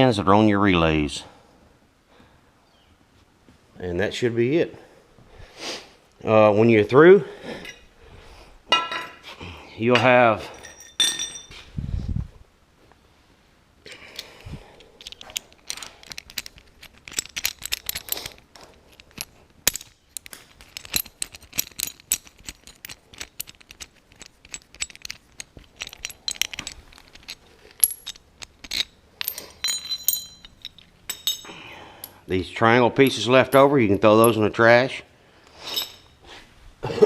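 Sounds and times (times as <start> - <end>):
metal hardware clinking: 10.0 - 11.6, 13.9 - 32.2, 35.7 - 36.2.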